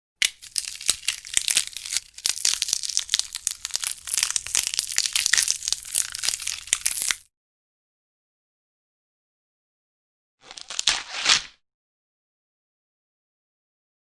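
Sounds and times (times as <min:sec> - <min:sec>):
crumpling and crunching: 0:00.2 - 0:07.3, 0:10.4 - 0:11.5.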